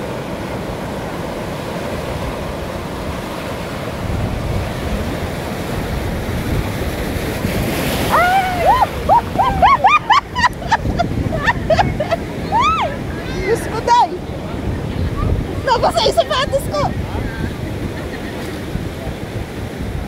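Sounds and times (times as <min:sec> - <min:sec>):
ocean surf rushing: 0:00.0 - 0:20.0
wind on microphone: 0:00.0 - 0:20.0.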